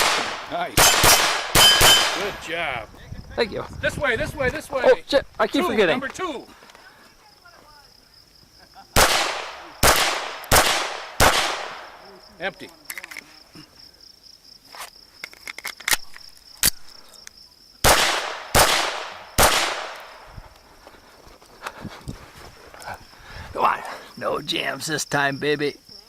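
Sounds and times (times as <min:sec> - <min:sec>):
pistol shots: 0:00.0 - 0:02.4, 0:09.0 - 0:12.0, 0:17.8 - 0:20.3
gun handling clicks: 0:12.6 - 0:13.3, 0:14.8 - 0:17.4.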